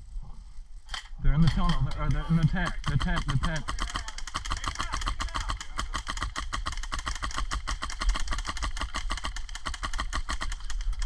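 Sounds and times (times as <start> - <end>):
airsoft rifle firing full-auto: 2.6 - 10.9.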